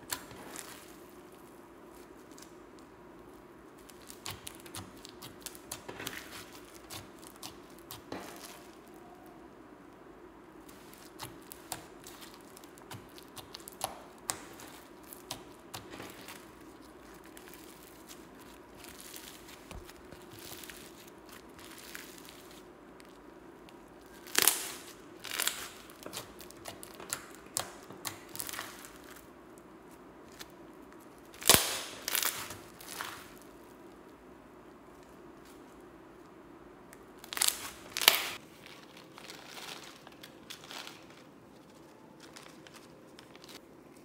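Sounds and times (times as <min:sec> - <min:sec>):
slime crackling and popping: 0:03.8 - 0:09.4, 0:10.6 - 0:29.3, 0:31.3 - 0:33.5, 0:37.0 - 0:41.3.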